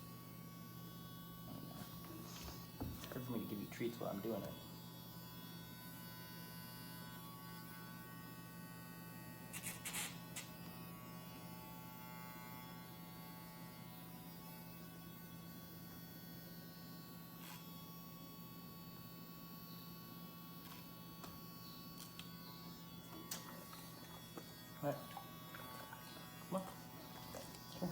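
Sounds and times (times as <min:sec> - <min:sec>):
electric nail grinder humming: 0:00.0 - 0:27.9.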